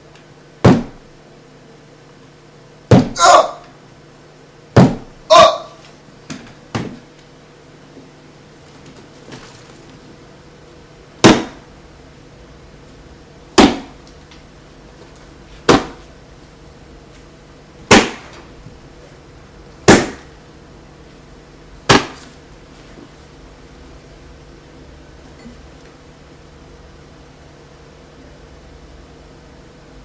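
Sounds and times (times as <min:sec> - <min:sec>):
steady low hum: 0:00.0 - 0:30.0
sharp impacts: 0:11.2 - 0:11.7, 0:13.5 - 0:14.0, 0:15.7 - 0:16.0, 0:17.9 - 0:18.4, 0:19.8 - 0:20.3, 0:21.9 - 0:22.3.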